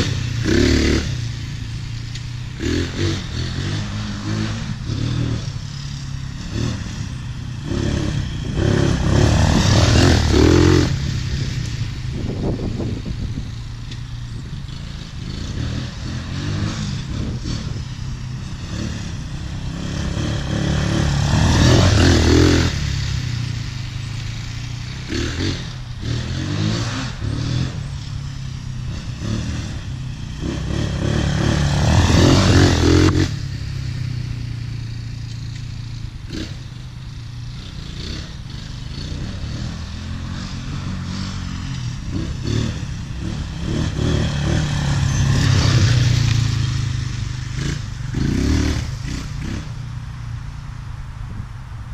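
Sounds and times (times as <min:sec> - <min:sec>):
quad bike engine running: 0:00.0 - 0:50.8.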